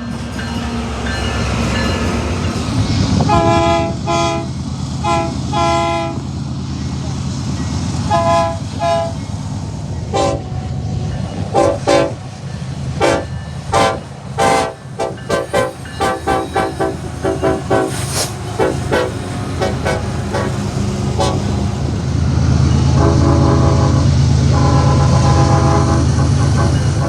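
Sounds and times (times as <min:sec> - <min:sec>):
locomotive air horn toots: 0:03.1 - 0:06.3, 0:08.0 - 0:09.2, 0:10.1 - 0:10.6, 0:11.4 - 0:12.3, 0:13.0 - 0:22.0, 0:22.8 - 0:27.0.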